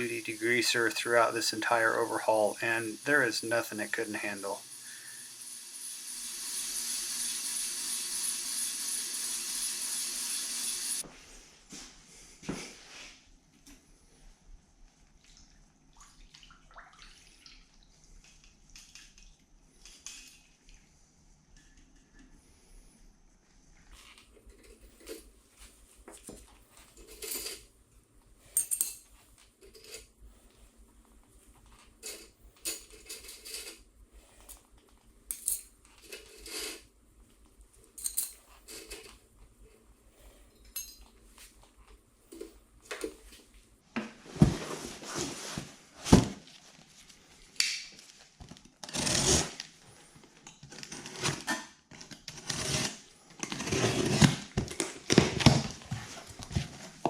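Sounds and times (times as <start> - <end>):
small metal parts clinking: 28.5 - 30.0, 35.3 - 36.7, 38.0 - 39.1, 40.5 - 41.1
rustling and scraping: 38.1 - 57.0.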